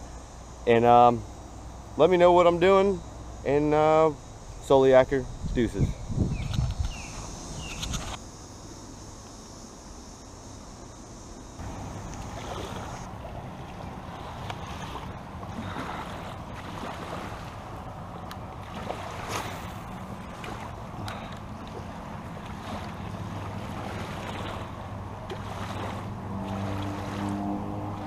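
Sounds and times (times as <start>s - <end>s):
engine low hum: 0.0s - 28.0s
steady outdoor noise: 0.0s - 28.0s
wind on microphone: 5.0s - 8.2s.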